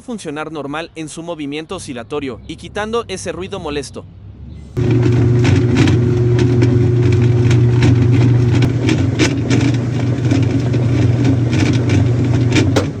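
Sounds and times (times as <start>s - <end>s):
washing machine humming: 4.8s - 13.0s.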